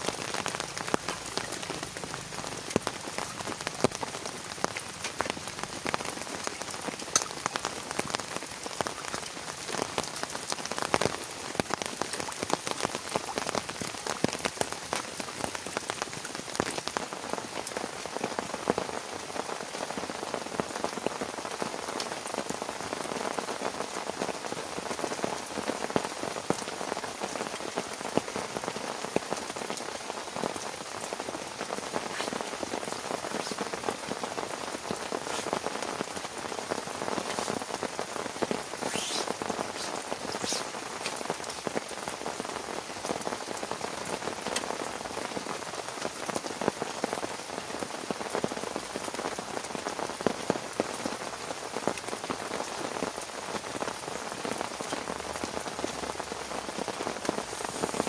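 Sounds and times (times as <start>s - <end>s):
heavy rain falling: 0.0s - 58.0s
brief high-pitched sounds: 38.8s - 40.7s.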